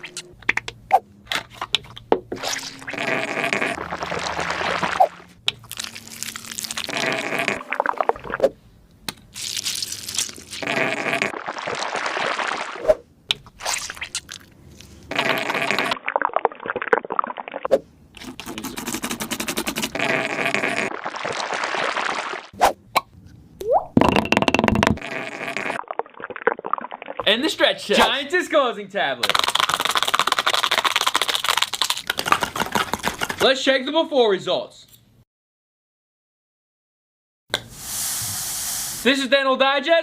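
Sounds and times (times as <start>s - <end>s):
slime squelching: 1.8s - 8.4s, 9.1s - 12.8s, 13.4s - 20.3s.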